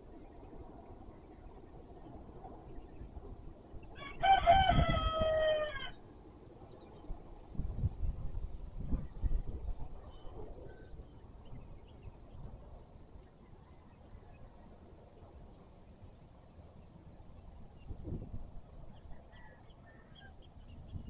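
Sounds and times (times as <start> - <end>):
wind gust on microphone: 4.1 - 5.8, 7.0 - 12.7, 17.8 - 19.2, 20.6 - 21.0.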